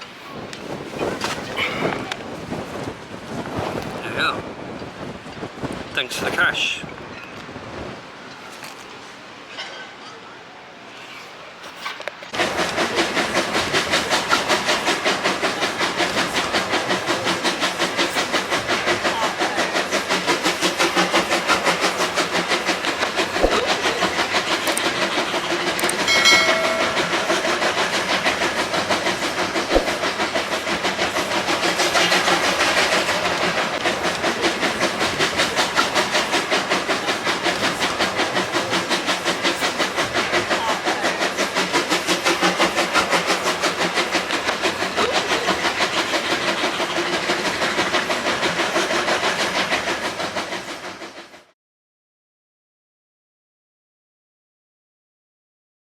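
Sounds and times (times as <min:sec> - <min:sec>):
steam train rhythmic beat: 0:12.3 - 0:51.6
train whistle: 0:25.8 - 0:27.6.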